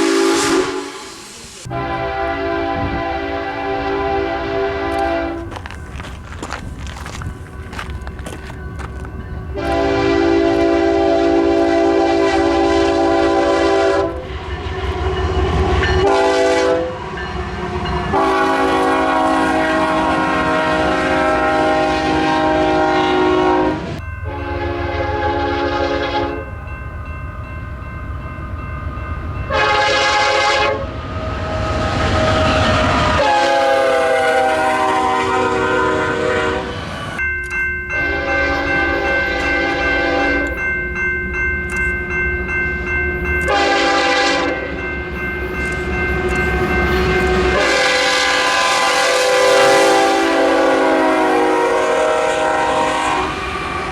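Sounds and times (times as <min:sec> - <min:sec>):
locomotive air horn blasts: 0:00.0 - 0:05.5, 0:09.6 - 0:26.5, 0:29.5 - 0:37.0, 0:38.0 - 0:40.5, 0:43.5 - 0:44.7, 0:46.2 - 0:53.9
train rumbling: 0:00.0 - 0:53.9.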